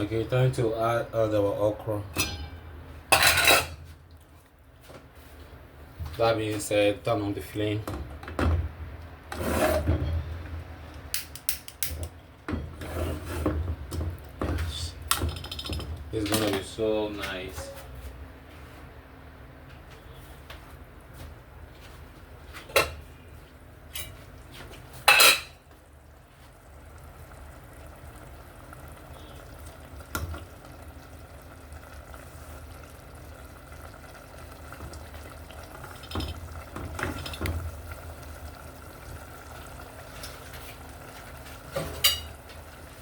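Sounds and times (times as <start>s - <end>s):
metal cookware knocking and clinking: 2.1s - 3.8s, 15.1s - 16.6s.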